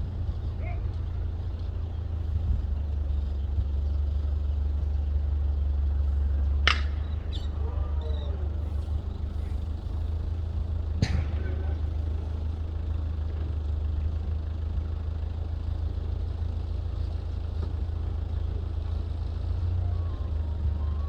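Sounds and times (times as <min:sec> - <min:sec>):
low rumble: 0:00.0 - 0:05.5
faint voices calling: 0:00.0 - 0:21.0
baseball bat crack: 0:06.6 - 0:07.6, 0:11.0 - 0:11.9.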